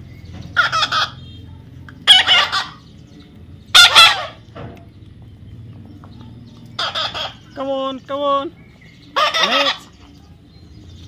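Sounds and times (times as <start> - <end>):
loud short bird calls: 6.7 - 7.7.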